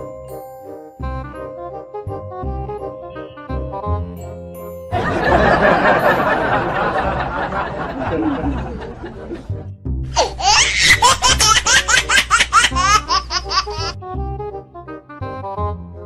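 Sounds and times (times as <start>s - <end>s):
background music: 0.0s - 16.0s
high-pitched rapid laughter: 10.2s - 13.9s.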